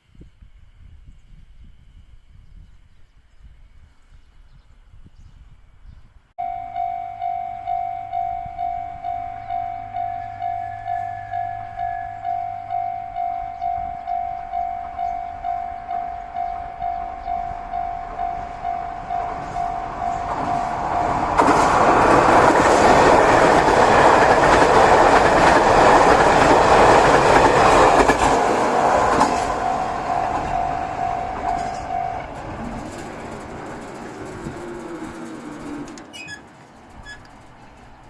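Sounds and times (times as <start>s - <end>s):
level-crossing warning bell: 6.4s - 35.6s
train passing: 6.4s - 38.0s.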